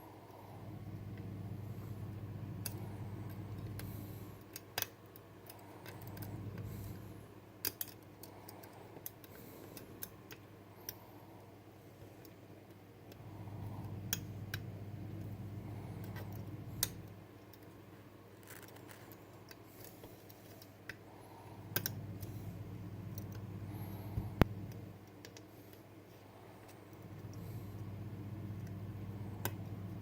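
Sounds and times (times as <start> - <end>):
low hum: 0.0 - 4.4, 5.6 - 7.3, 13.1 - 17.2, 21.1 - 25.1, 26.3 - 30.0.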